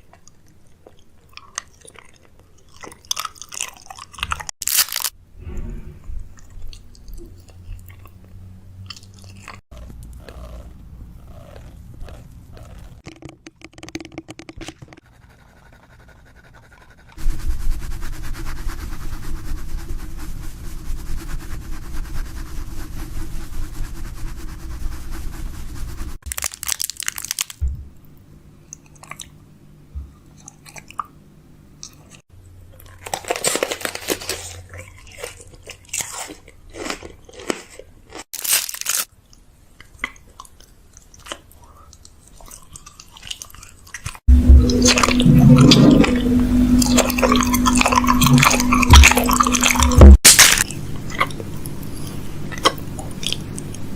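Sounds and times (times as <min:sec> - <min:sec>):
packaging crinkling and clattering: 0:26.3 - 0:27.6, 0:38.4 - 0:39.1.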